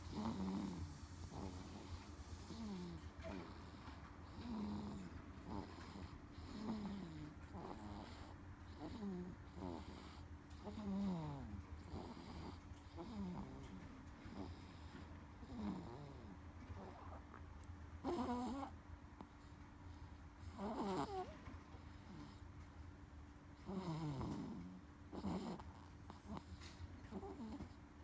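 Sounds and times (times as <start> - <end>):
baby snoring squeakily: 0.1 - 3.5, 18.0 - 18.7, 20.6 - 21.3.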